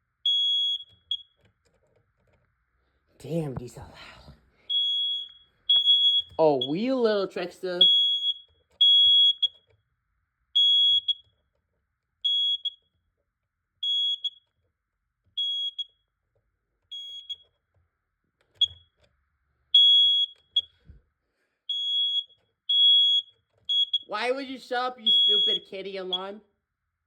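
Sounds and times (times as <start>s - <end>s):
smoke alarm beeping: 0.2s - 1.4s, 4.7s - 9.7s, 10.6s - 11.4s, 12.2s - 12.9s, 13.8s - 14.6s, 15.4s - 16.1s, 16.9s - 17.6s, 18.6s - 19.0s, 19.7s - 20.9s, 21.7s - 26.4s.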